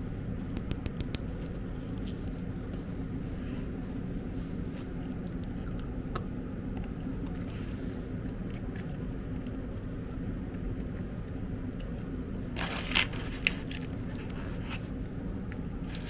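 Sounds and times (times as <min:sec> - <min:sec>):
steady low rumble: 0:00.0 - 0:16.0
faint packaging rustles: 0:12.5 - 0:15.0.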